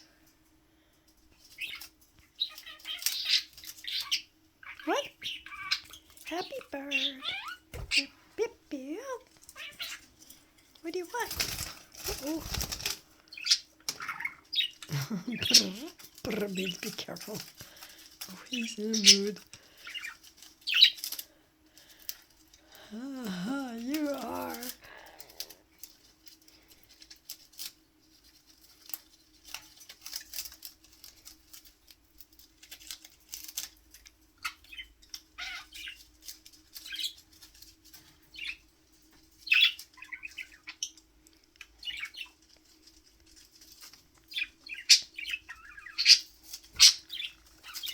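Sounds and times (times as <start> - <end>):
faint steady hum: 0.0 - 47.9
small clicks and rustles: 0.2 - 4.2, 9.2 - 22.7, 23.8 - 47.9
budgie chirping: 12.1 - 16.9.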